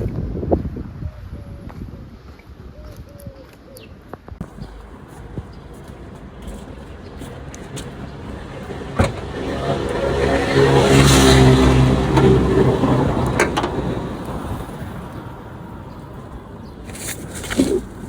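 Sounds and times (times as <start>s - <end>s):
car driving past: 6.4s - 15.4s.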